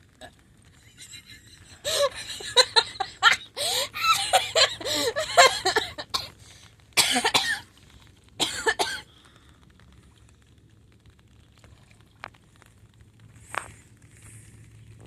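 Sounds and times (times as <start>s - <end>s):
person coughing: 3.8s - 6.4s, 7.0s - 7.6s, 8.4s - 9.1s.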